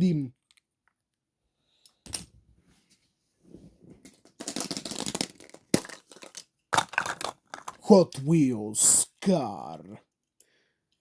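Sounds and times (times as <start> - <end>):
wrapper crinkling and tearing: 4.3 - 7.8.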